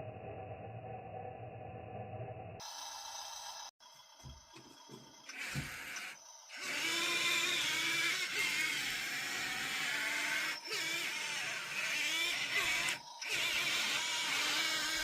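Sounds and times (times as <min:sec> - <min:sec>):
small electric motors whining: 0:04.6 - 0:15.0.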